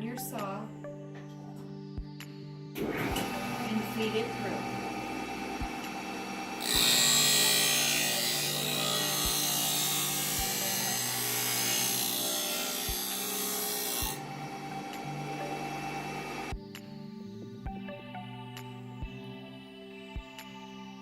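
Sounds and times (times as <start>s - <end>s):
grinding scratch of blade on disc: 2.8s - 16.5s
table saw running: 2.8s - 16.5s.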